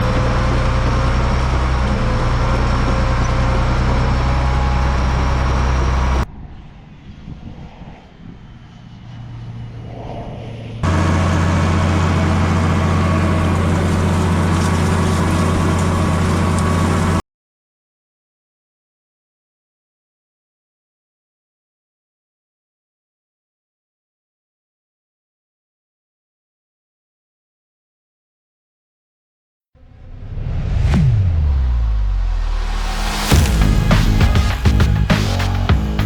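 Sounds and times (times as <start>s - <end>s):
farm machine engine humming: 0.0s - 6.2s, 10.8s - 17.2s, 32.7s - 36.0s.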